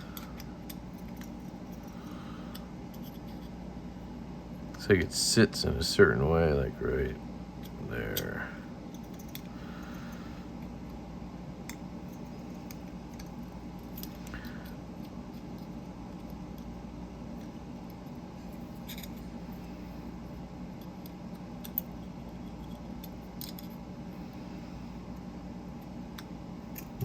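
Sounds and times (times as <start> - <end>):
steady low hum: 0.0 - 27.0
small metal parts clicking: 7.6 - 9.5, 18.6 - 19.3, 20.8 - 23.8, 26.2 - 27.0.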